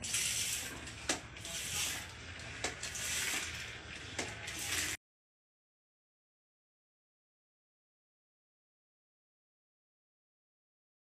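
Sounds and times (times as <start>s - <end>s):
water blaster spraying: 0.0s - 5.0s.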